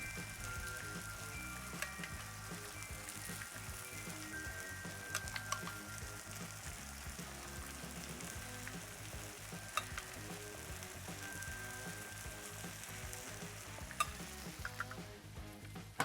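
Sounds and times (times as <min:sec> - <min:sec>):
cheese sizzling on griddle: 0:00.0 - 0:16.0
utensil clicking on griddle: 0:00.7 - 0:04.2, 0:05.0 - 0:15.0.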